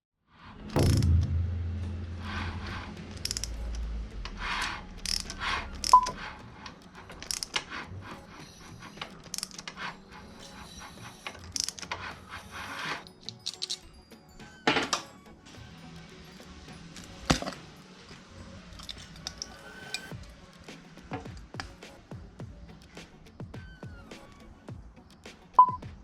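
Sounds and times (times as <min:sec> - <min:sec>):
thump: 0:00.7 - 0:02.9
small metal parts clinking: 0:03.1 - 0:03.8, 0:05.0 - 0:07.8, 0:08.6 - 0:14.0, 0:18.7 - 0:20.1.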